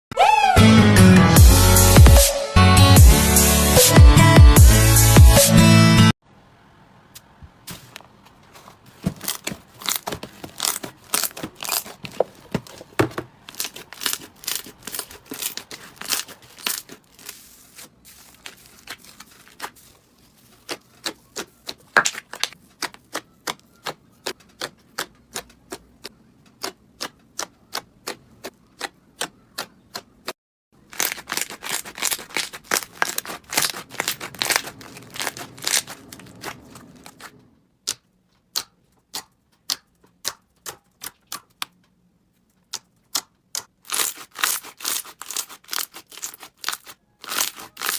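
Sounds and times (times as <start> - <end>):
slime crackling and popping: 9.2 - 12.2, 13.5 - 22.9, 30.8 - 37.3, 43.1 - 47.9.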